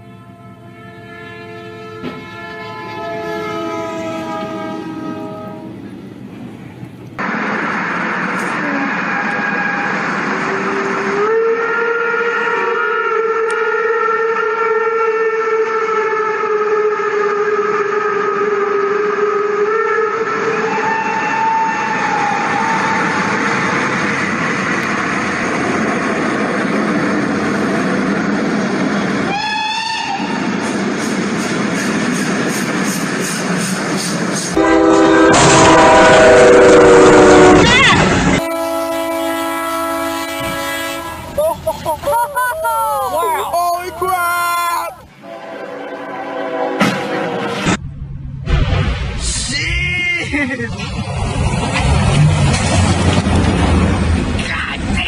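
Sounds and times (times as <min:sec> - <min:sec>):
train air horn chord: 0:00.0 - 0:05.8, 0:10.5 - 0:21.2, 0:34.6 - 0:41.4, 0:45.2 - 0:47.8
train running past: 0:00.0 - 0:14.0, 0:17.2 - 0:48.2, 0:50.6 - 0:55.0.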